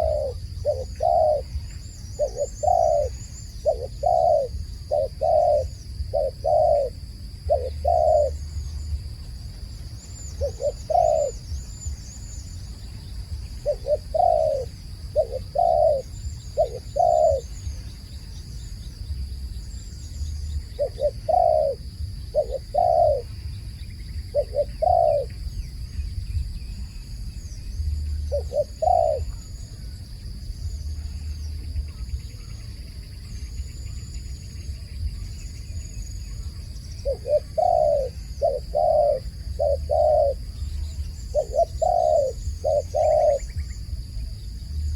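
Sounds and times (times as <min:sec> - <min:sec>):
dove cooing: 0:00.0 - 0:09.0, 0:10.0 - 0:12.5, 0:13.3 - 0:17.9, 0:20.1 - 0:23.4, 0:24.2 - 0:25.4, 0:27.8 - 0:29.4, 0:36.4 - 0:44.9
faint birds chirping: 0:00.0 - 0:44.9.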